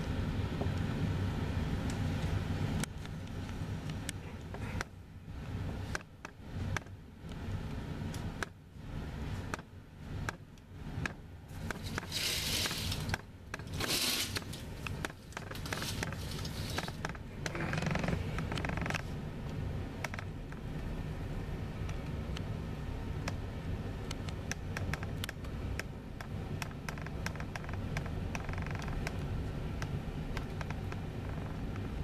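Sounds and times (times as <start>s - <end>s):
clicks and scraping: 11.0s - 19.1s
loud rustles: 11.6s - 18.4s.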